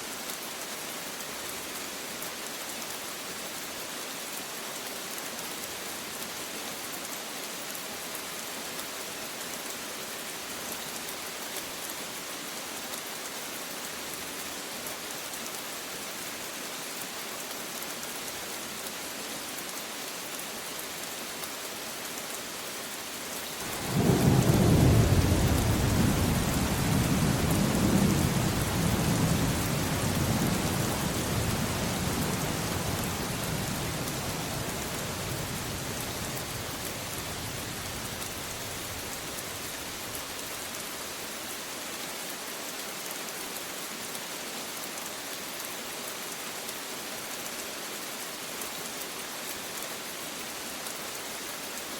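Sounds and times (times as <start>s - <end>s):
steady rain falling: 0.0s - 51.9s
thunder rumbling: 23.6s - 39.4s.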